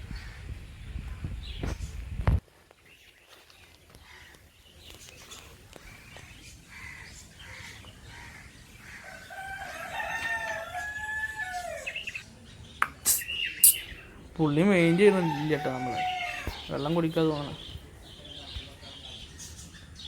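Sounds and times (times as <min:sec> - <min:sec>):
rooster crowing: 0:08.9 - 0:12.1, 0:14.7 - 0:16.7.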